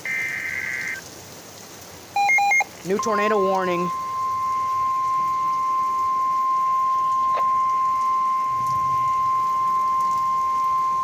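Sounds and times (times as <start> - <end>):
loud steady high alarm tone: 0.0 - 1.0, 2.2 - 11.0.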